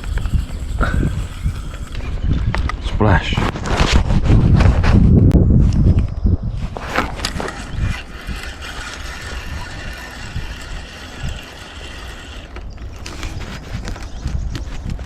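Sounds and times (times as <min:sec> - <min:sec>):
fishing reel whirring: 0:00.0 - 0:02.7, 0:07.0 - 0:14.2
handling noise and clicks: 0:06.8 - 0:15.0.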